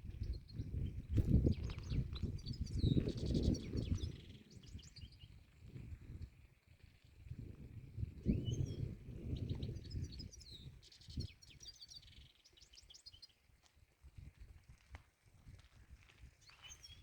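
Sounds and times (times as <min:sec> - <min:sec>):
songbird singing: 0:00.0 - 0:05.7, 0:08.0 - 0:13.5, 0:16.4 - 0:17.0.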